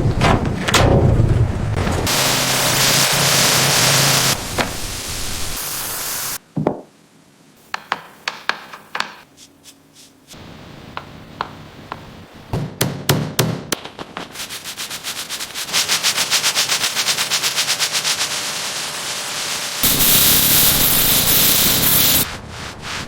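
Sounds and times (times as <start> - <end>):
power tool hissing: 2.1 - 6.4, 15.6 - 22.3
hammer knocks: 7.7 - 9.2, 10.9 - 13.8.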